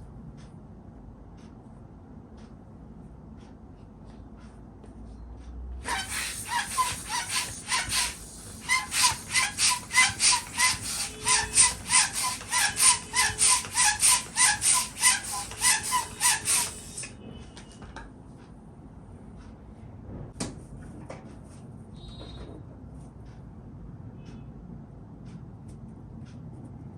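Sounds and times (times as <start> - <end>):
hand pump inflating balloon: 5.8 - 17.1.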